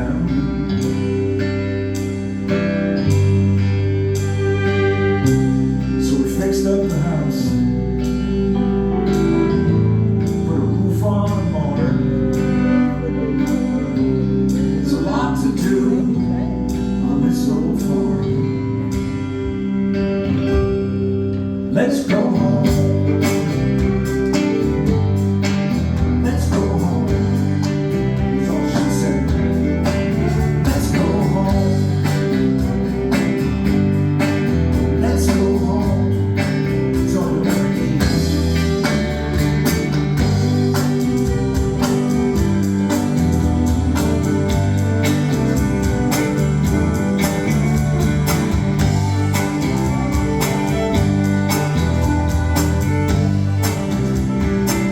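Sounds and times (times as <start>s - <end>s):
electric guitar: 0.0s - 54.9s
stepping bass line: 22.2s - 54.9s
steady drum beat: 22.6s - 54.9s.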